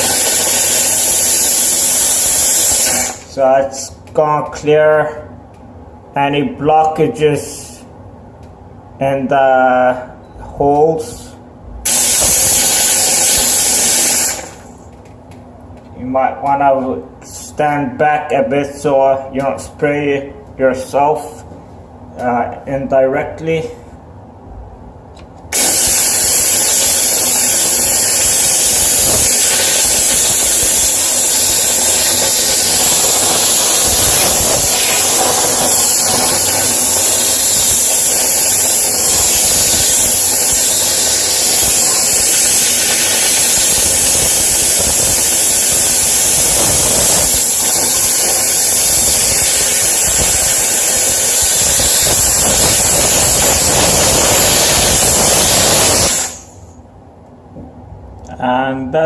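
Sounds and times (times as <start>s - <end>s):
steam cleaner hissing: 0.0s - 3.4s, 11.9s - 14.8s, 25.5s - 56.7s.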